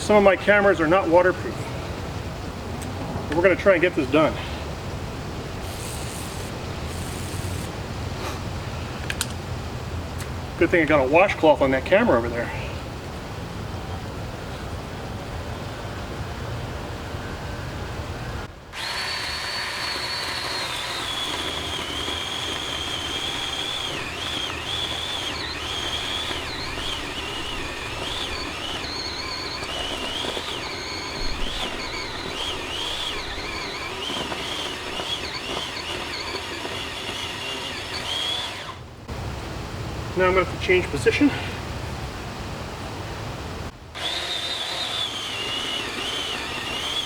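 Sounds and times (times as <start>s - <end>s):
electric chainsaw cutting wood: 5.4s - 7.8s, 18.7s - 38.8s, 43.9s - 47.0s.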